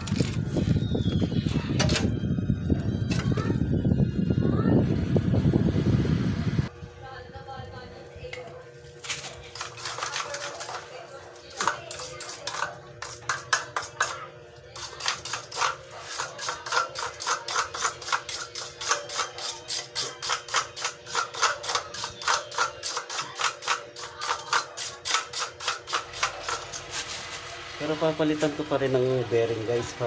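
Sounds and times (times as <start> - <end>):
rapid metal tapping: 11.6 - 27.0.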